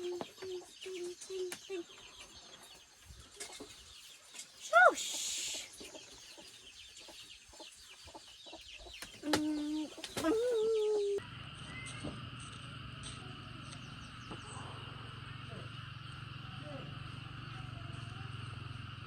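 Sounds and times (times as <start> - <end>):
faint bird chirps: 0.0 - 12.1
steady low hum: 10.7 - 19.0.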